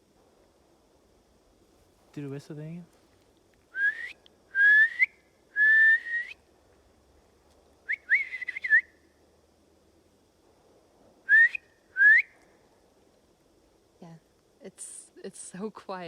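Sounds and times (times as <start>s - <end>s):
person whistling call whistles: 3.8s - 6.4s, 7.9s - 8.9s, 11.3s - 12.3s.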